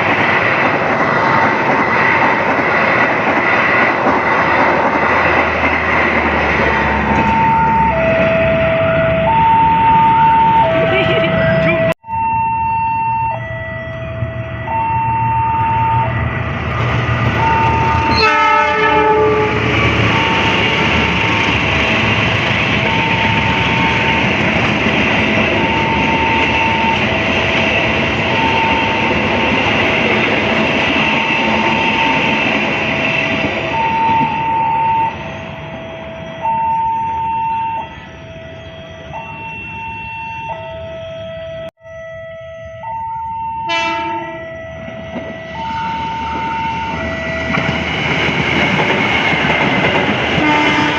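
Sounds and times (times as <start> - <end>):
train cars rumbling on rails: 0.0 - 41.7, 42.6 - 50.9
level crossing alarm high and low tone: 5.1 - 50.9
train horn: 17.4 - 19.7, 43.6 - 44.7, 50.4 - 50.9.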